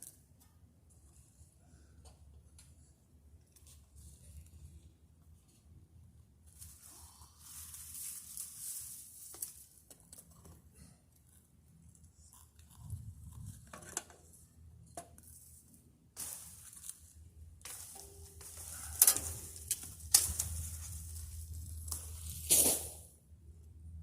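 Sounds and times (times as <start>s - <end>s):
dry palm fronds rustling: 6.5s - 9.9s, 15.3s - 23.1s.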